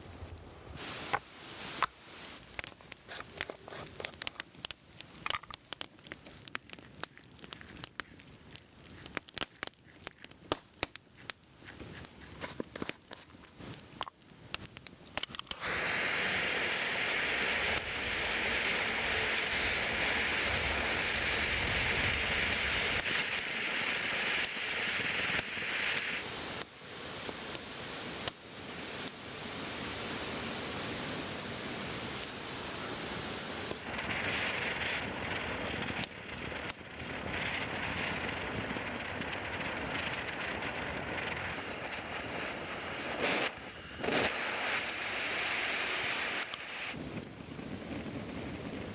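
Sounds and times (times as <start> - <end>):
food sizzling in hot fat: 0.0 - 7.0, 15.2 - 28.3, 33.6 - 47.0.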